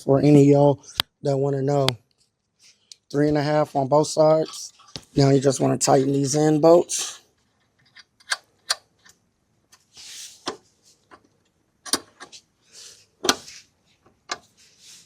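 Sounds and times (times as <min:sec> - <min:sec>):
soft rustles: 0:12.3 - 0:15.0.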